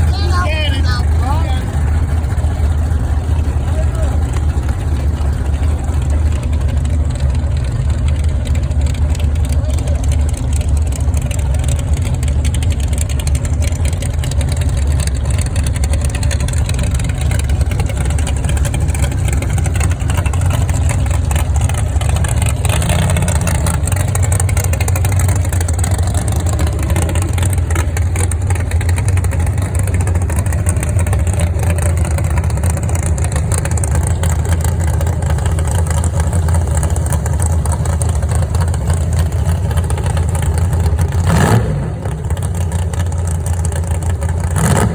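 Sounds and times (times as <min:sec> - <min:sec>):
vehicle engine rumbling: 0:00.0 - 0:44.9.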